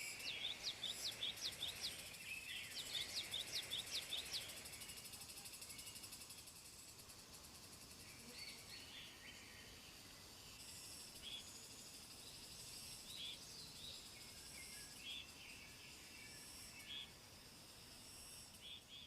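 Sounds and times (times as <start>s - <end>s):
bird chirps: 0.0s - 6.2s
insect trill: 0.0s - 19.0s.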